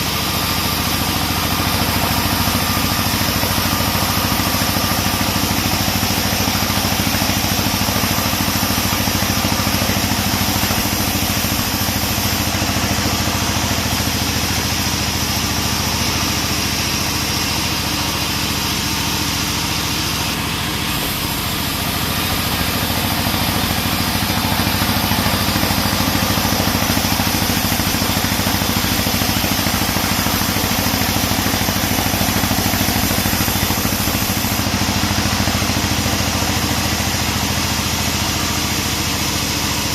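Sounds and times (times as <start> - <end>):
band sawmill sawing a log: 0.0 - 39.9.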